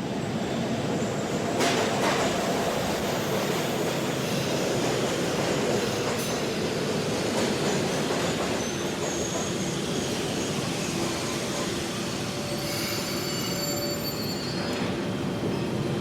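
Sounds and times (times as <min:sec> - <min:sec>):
train wheels rumbling on rails: 0:00.7 - 0:16.0
high wheel squeals: 0:08.6 - 0:15.0.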